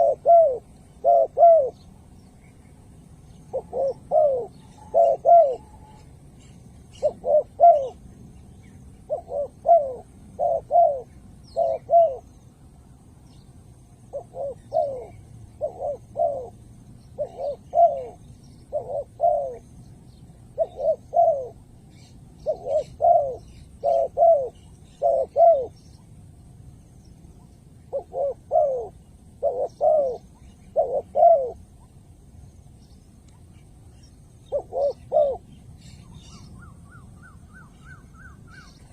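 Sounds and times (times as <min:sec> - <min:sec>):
dove cooing: 0:00.0 - 0:02.1, 0:03.4 - 0:08.1, 0:09.0 - 0:12.3, 0:14.1 - 0:19.8, 0:20.4 - 0:25.8, 0:27.8 - 0:31.9, 0:34.4 - 0:38.9.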